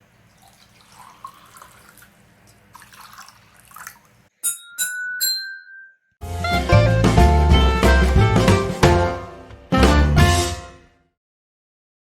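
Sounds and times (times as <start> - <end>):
ceramic bowls struck ringing: 4.4 - 6.1.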